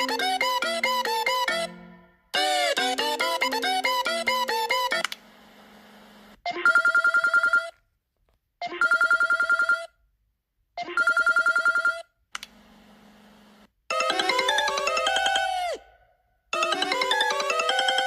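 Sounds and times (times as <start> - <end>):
melodic ringtone: 0.0 - 5.0, 13.9 - 18.0
trilling phone ringtone: 0.0 - 5.0, 6.5 - 7.8, 8.6 - 10.0, 10.8 - 12.1, 13.9 - 16.0, 16.6 - 18.0.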